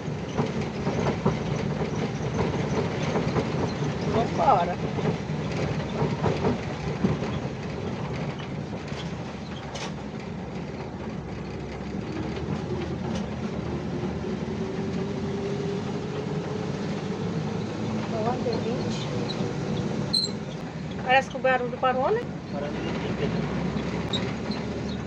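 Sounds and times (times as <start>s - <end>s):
road rumble: 0.0s - 25.0s
van engine running: 0.0s - 25.0s
knocks and rattles: 0.1s - 13.7s.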